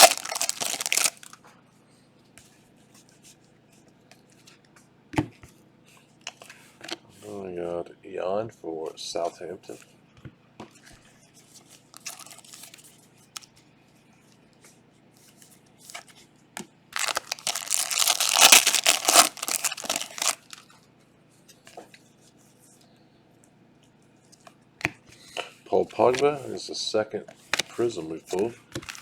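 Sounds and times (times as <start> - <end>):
foil wrapper tearing and crinkling: 0.0 - 1.4, 11.9 - 12.8, 17.0 - 20.7, 28.8 - 29.0.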